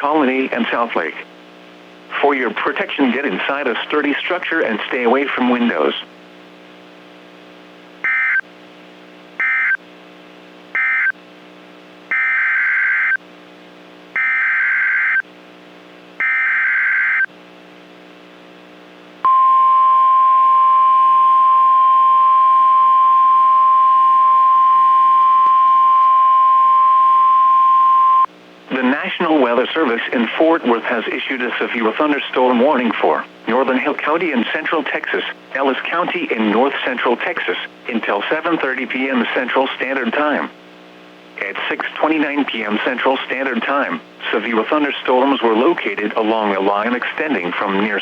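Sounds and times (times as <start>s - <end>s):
steady warning alarm tone: 14.2s - 15.2s, 19.3s - 28.3s.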